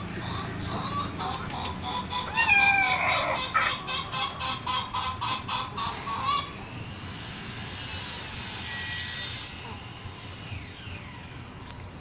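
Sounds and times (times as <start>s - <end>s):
chicken clucking: 0.2s - 6.6s
chicken squawk: 0.6s - 6.7s.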